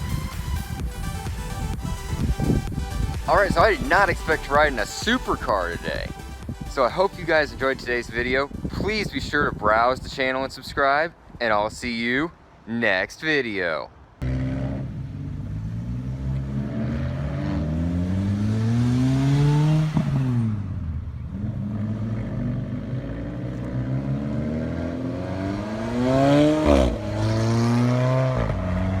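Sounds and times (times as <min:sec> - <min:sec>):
car engine accelerating: 0:14.2 - 0:29.0.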